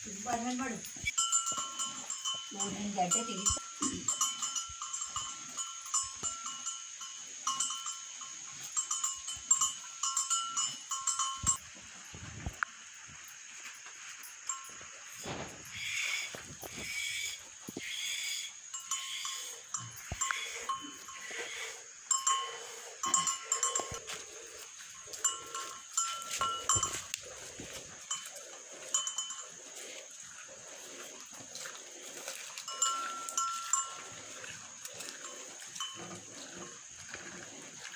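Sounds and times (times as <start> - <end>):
cow bell clanking: 0.1 - 11.8, 14.2 - 16.0, 18.6 - 37.6
cowbell clinking: 0.3 - 11.7, 14.3 - 15.1, 18.6 - 21.5, 22.1 - 27.2, 28.0 - 30.0, 31.6 - 36.8.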